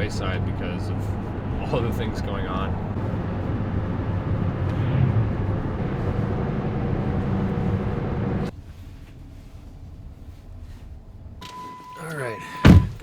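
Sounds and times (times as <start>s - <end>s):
van engine and road noise: 0.0s - 13.0s.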